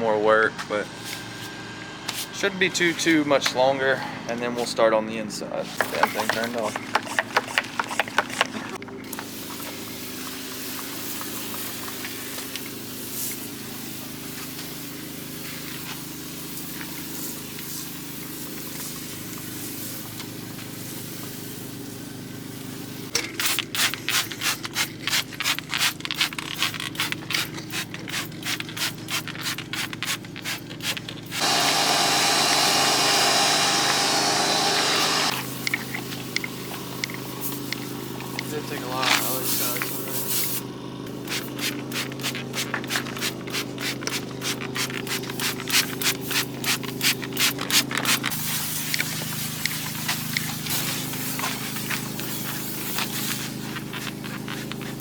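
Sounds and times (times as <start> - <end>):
pressure washer motor humming: 5.5 - 23.4, 29.6 - 55.0
rapid scrubbing strokes: 30.4 - 35.4
loud spray hiss: 31.4 - 35.6, 36.6 - 40.6, 44.8 - 53.8.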